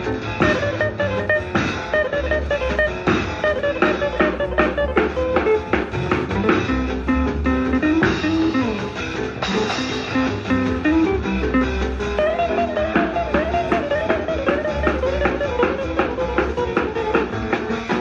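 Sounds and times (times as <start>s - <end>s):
guitar melody over a beat: 0.0s - 18.0s.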